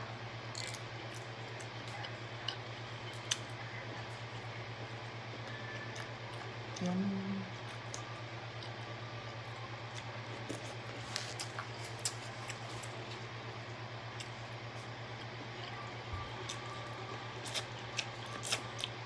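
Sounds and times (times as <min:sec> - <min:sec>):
low electrical hum: 0:00.0 - 0:19.0
chewing and smacking: 0:09.9 - 0:13.2, 0:14.1 - 0:19.0.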